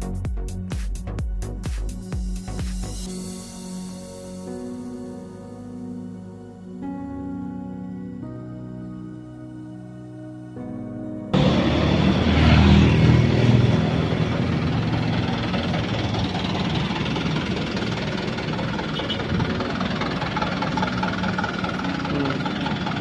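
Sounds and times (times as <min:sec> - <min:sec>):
diesel engine running inside vehicle: 0:11.3 - 0:23.0.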